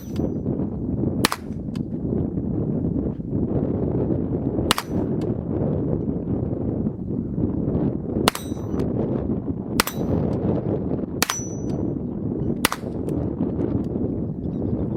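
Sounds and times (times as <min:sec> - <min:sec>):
steel target ringing ping: 0:00.0 - 0:00.4, 0:08.3 - 0:08.8, 0:09.8 - 0:10.3, 0:11.2 - 0:11.9
low wind rumble: 0:00.0 - 0:14.9
rifle shots: 0:01.2 - 0:01.7, 0:04.7 - 0:05.2, 0:08.3 - 0:08.8, 0:09.8 - 0:10.2, 0:11.2 - 0:11.8, 0:12.6 - 0:13.1.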